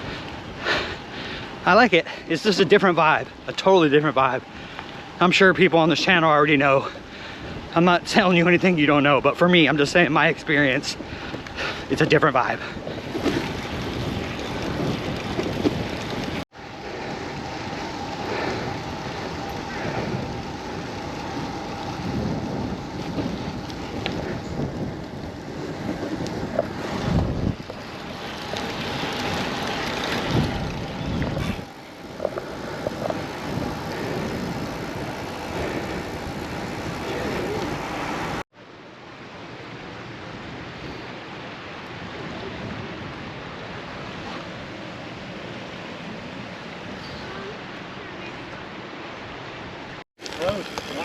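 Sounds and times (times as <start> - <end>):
wind buffeting microphone: 0.0 - 38.4
bicycle road noise: 0.0 - 51.0.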